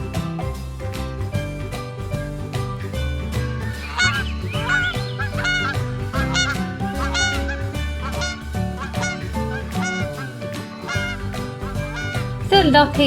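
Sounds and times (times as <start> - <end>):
background music: 0.0 - 13.0
goose honking: 3.7 - 12.5.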